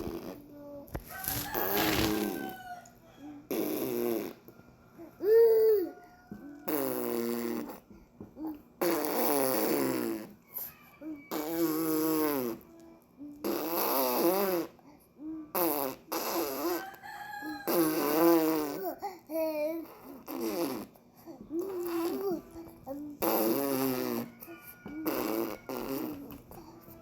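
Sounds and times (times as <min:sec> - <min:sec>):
baby vocalizing: 0:05.1 - 0:06.0, 0:17.6 - 0:27.0.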